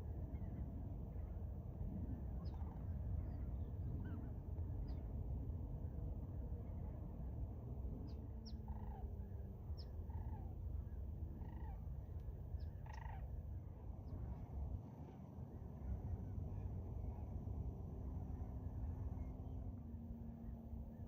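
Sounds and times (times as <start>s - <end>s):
distant animal calls: 12.8s - 13.3s.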